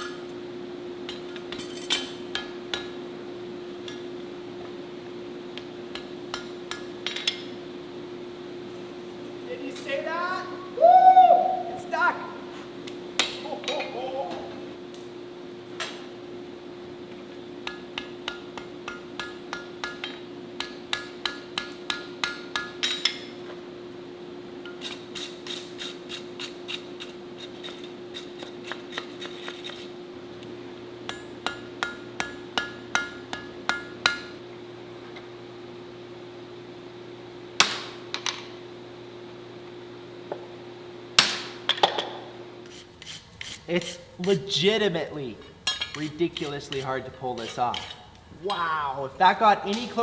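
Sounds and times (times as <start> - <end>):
steady hum: 42.4 - 50.0.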